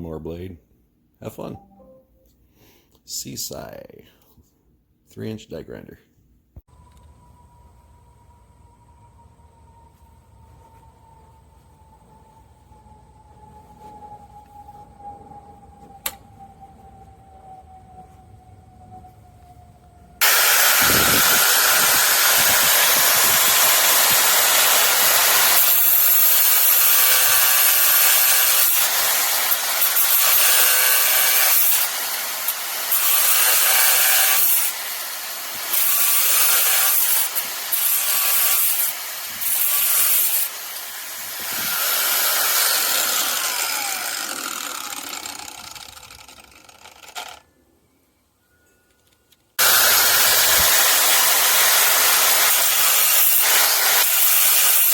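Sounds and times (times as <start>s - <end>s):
grinder disc grinding metal: 20.2s - 47.5s, 49.6s - 54.9s.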